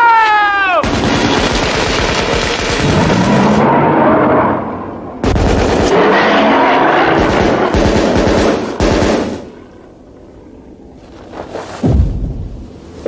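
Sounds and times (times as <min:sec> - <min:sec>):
rifles firing in a volley: 0:00.8 - 0:03.6, 0:05.2 - 0:06.2, 0:07.0 - 0:09.5.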